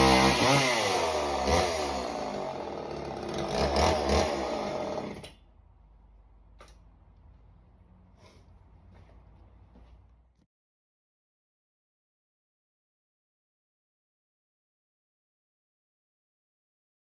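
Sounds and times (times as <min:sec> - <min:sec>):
chainsaw engine revving: 0:00.0 - 0:05.3.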